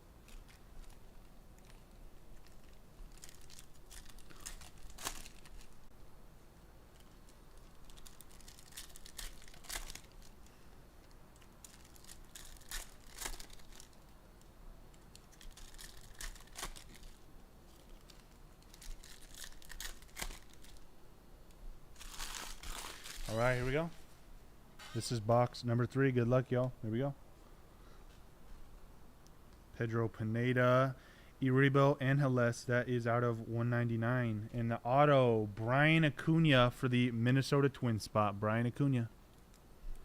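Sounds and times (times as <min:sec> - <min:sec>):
plastic wrapping crinkling and tearing: 0:00.2 - 0:05.9, 0:06.9 - 0:14.2, 0:14.9 - 0:20.9, 0:21.9 - 0:23.9.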